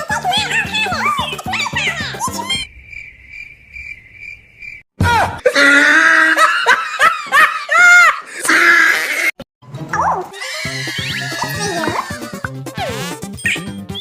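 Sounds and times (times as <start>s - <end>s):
cricket chirping: 2.6s - 4.9s
outburst of laughter: 5.5s - 8.5s.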